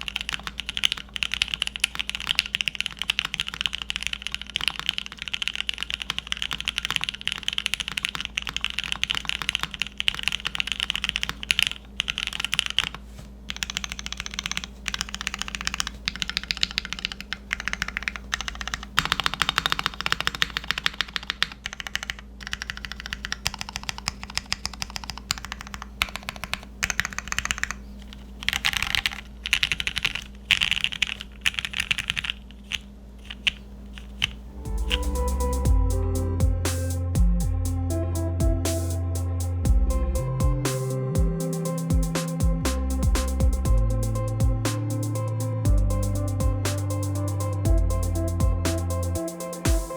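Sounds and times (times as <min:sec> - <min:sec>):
mechanical keyboard typing: 0:00.0 - 0:35.5.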